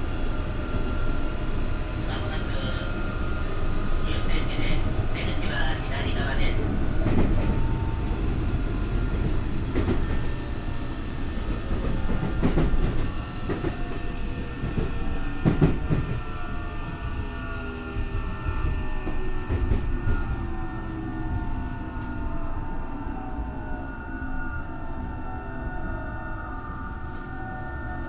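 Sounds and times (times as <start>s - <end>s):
train motor whine: 0.0s - 28.0s
train wheel and rail rumble: 0.0s - 28.0s
rail joint clicks: 5.2s - 7.8s, 9.0s - 10.4s, 11.4s - 16.4s, 18.0s - 20.5s.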